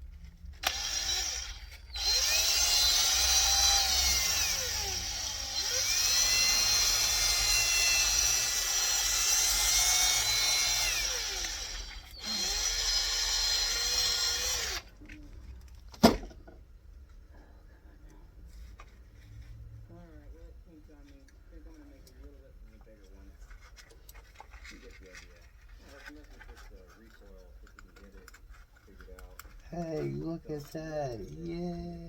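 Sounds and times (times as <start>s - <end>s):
power tool motor running: 0.6s - 14.8s.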